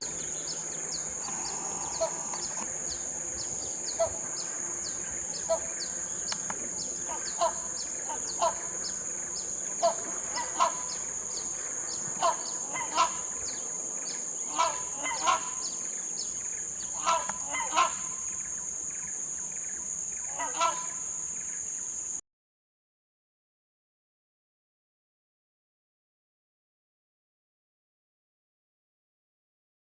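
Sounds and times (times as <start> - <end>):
hornbill honking calls: 0.0 - 21.7
high-pitched insect drone: 0.0 - 22.2.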